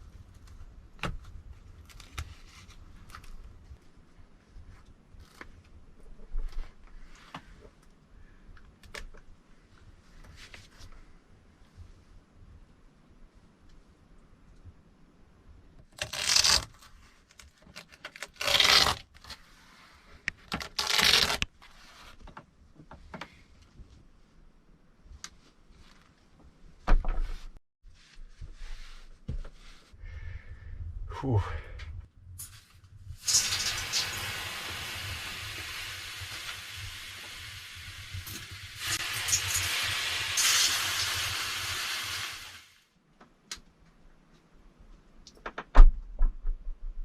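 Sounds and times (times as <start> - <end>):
water sizzling on hot stones: 33.2 - 42.8.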